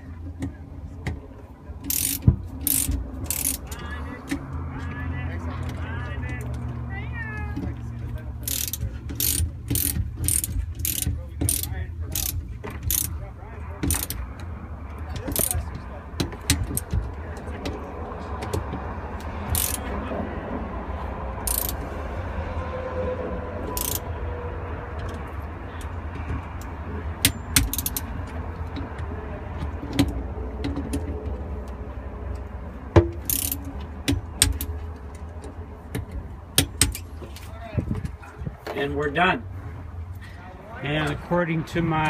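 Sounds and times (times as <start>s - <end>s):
torque wrench ratcheting: 1.8s - 3.8s, 8.4s - 13.2s, 13.9s - 14.2s, 15.3s - 15.6s, 19.4s - 19.9s, 21.4s - 21.8s, 23.7s - 24.1s, 27.2s - 28.2s, 33.2s - 33.7s.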